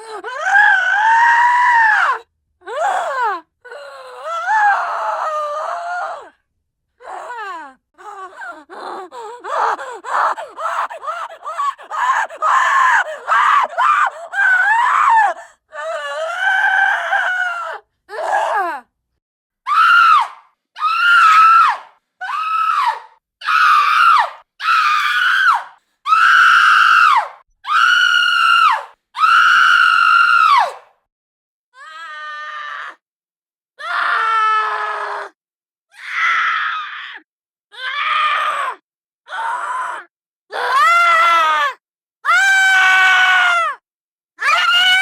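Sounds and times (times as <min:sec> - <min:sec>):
woman screaming and wailing: 0:07.0 - 0:18.8, 0:44.4 - 0:45.0.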